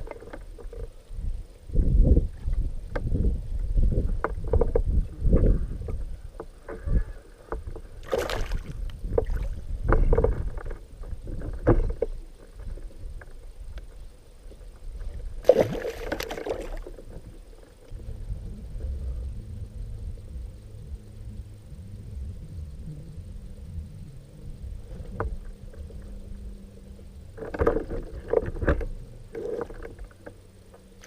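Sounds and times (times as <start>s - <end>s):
water splashing: 8.0s - 9.6s, 15.4s - 17.2s.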